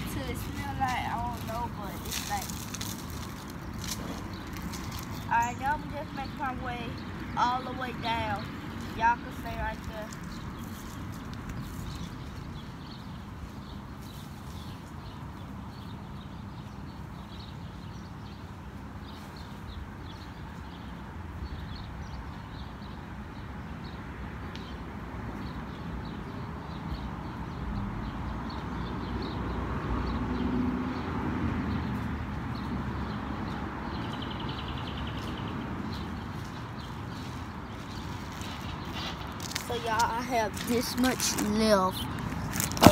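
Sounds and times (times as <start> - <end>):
outdoor noise: 0.0 - 42.9
footsteps: 36.0 - 42.9.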